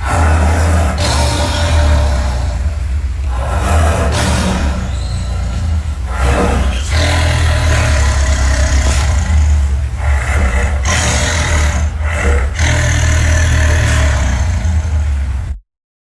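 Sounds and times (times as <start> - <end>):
deep monster growl: 0.0 - 15.6.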